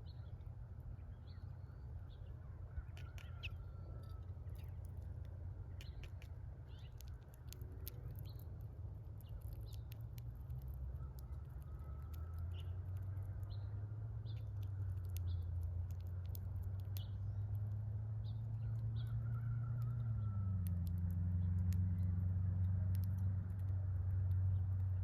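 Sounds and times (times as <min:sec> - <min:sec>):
small birds chirping: 0:00.0 - 0:25.0
sharp clicks: 0:02.9 - 0:13.6, 0:14.3 - 0:20.0.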